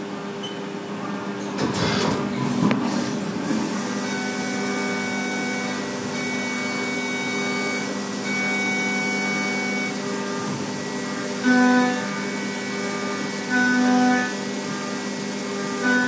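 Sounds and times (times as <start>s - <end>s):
milling machine whine: 1.7s - 16.0s
high machine tone: 3.4s - 16.0s.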